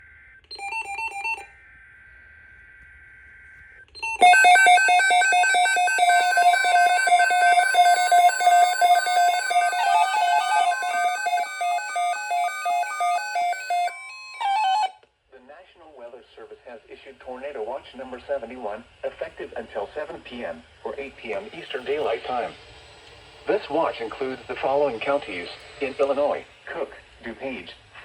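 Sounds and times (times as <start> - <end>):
pulsing electronic alarm: 0.0 - 15.0
buzzy digital data burst: 0.2 - 13.9
steady alert tone: 4.0 - 14.9.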